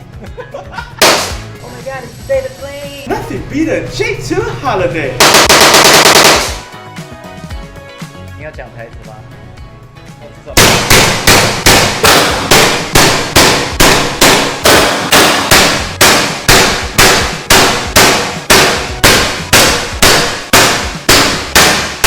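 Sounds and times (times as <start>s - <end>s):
sharp metallic bangs: 1.0s - 1.6s, 5.2s - 6.8s, 10.6s - 22.0s.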